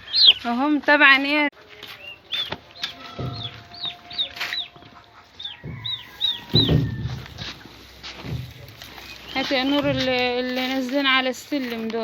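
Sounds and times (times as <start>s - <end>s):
poultry peeping: 0.0s - 12.0s.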